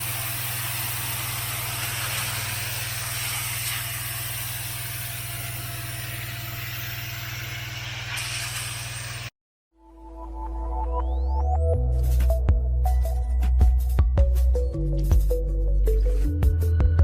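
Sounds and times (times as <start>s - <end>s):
high-pressure water spray hiss: 0.0s - 9.3s
pressure washer engine hum: 0.0s - 9.3s.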